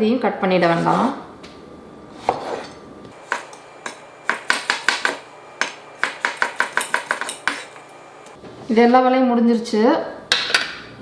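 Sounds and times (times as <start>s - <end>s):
knife chopping on cutting board: 2.2s - 7.8s.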